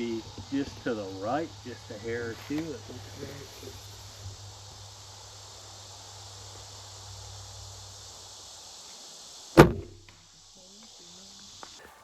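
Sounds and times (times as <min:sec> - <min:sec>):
insects hissing: 0:00.0 - 0:12.0
arrow hitting foam target: 0:09.6 - 0:10.2.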